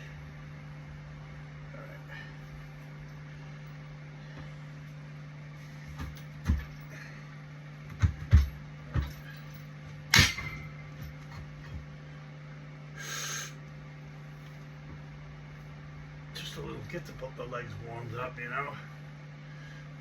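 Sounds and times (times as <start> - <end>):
steady low hum: 0.0 - 20.0
barbell metal clank: 10.1 - 10.8.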